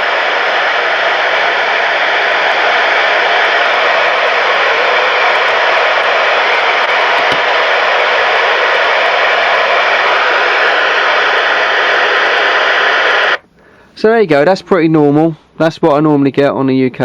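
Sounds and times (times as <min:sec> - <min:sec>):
radio static hiss: 0:00.0 - 0:13.4.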